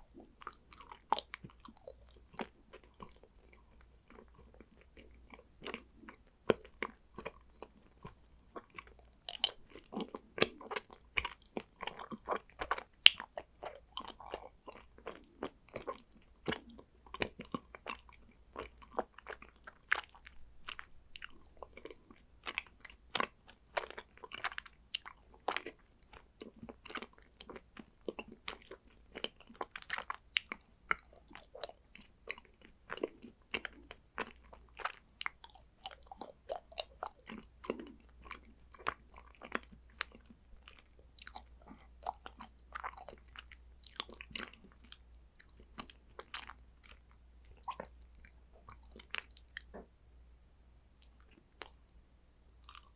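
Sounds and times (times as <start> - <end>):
chocolate crunching while chewing: 0.0 - 49.8, 51.0 - 52.9
wet mouth clicks: 47.6 - 49.7, 51.0 - 51.9.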